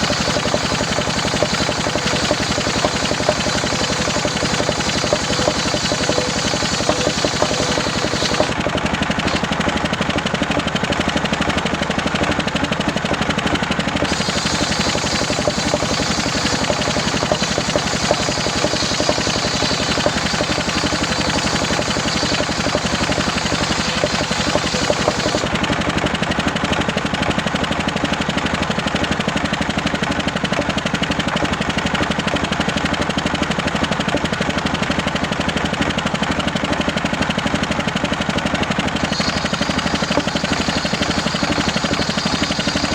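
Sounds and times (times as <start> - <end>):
saw blade whine: 0.0 - 9.6, 14.0 - 25.5, 38.8 - 42.9
engine-driven circular saw cutting wood: 0.0 - 26.0, 38.4 - 42.9.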